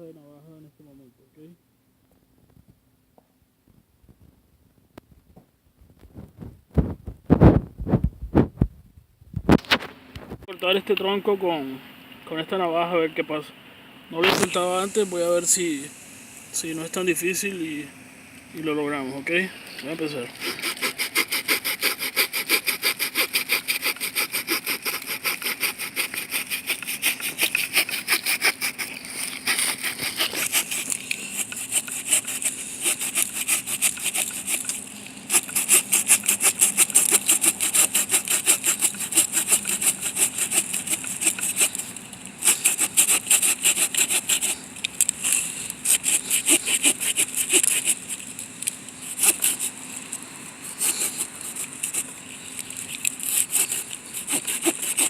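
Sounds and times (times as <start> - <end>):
saw blade sawing through log: 14.2 - 15.9, 18.7 - 49.8, 50.6 - 55.0.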